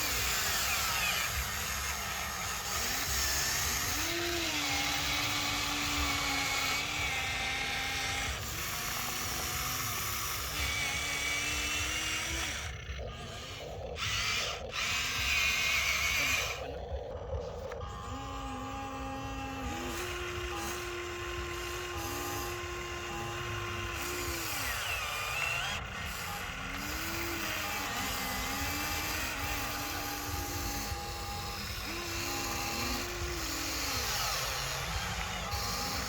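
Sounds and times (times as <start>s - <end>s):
small electric motor whirring: 0.0s - 36.0s.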